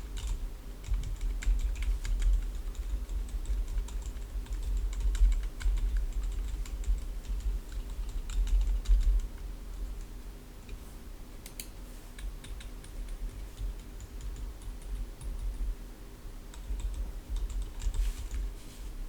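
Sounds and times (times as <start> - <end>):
typing on mechanical keyboard: 0.2 - 9.4, 12.2 - 15.6, 16.5 - 18.4.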